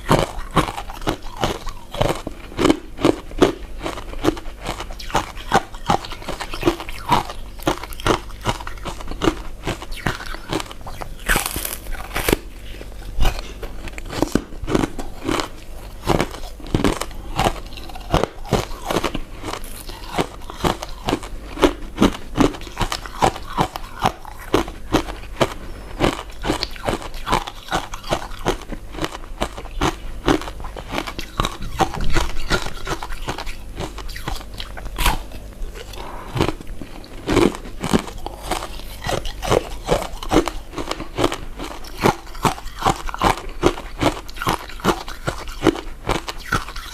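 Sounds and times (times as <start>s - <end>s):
chewing mouth clicks: 22.4s - 46.9s.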